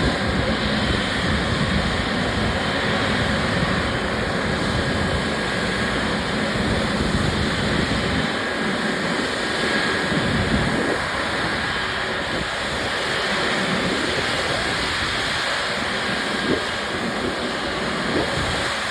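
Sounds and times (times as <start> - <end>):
jet engines rushing: 0.0 - 18.9
wind buffeting microphone: 0.0 - 18.9.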